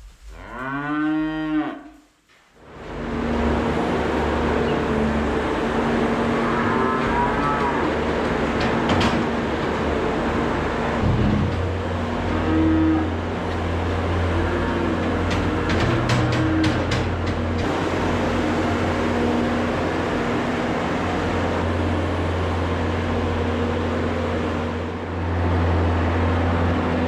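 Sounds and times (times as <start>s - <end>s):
skid steer engine running: 2.7s - 12.4s, 13.1s - 27.0s
calves bawling: 5.8s - 8.6s.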